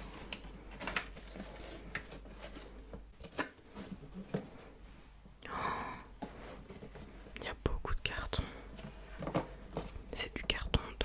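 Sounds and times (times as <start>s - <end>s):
packaging rustle: 0.0s - 4.6s.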